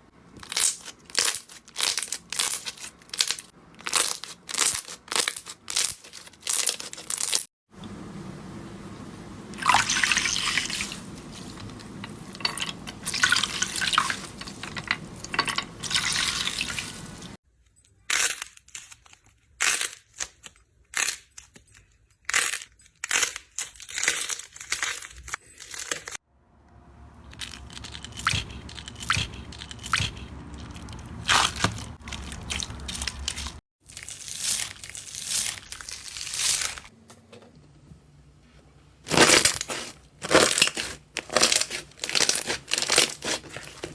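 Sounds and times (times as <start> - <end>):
slime crackling: 39.1 - 43.9.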